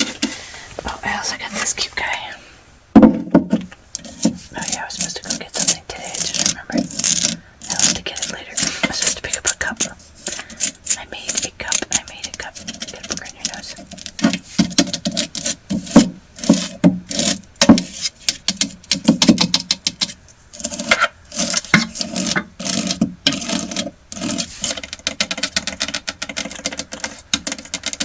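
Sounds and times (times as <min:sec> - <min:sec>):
small hard objects tapping and clattering: 0:11.3 - 0:28.0.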